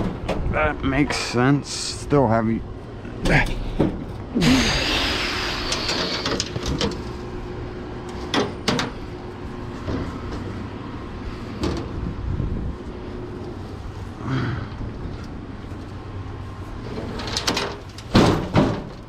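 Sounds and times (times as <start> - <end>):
heavy unit scraping and knocking: 0.0 - 2.2, 3.1 - 7.4, 15.0 - 19.0
faint steady hum: 0.0 - 19.0.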